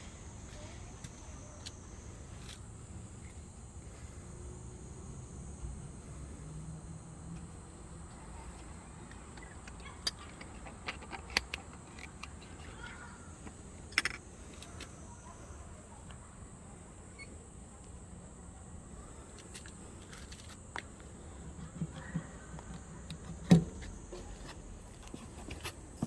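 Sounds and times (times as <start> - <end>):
plastic and metal clattering: 8.4 - 14.9.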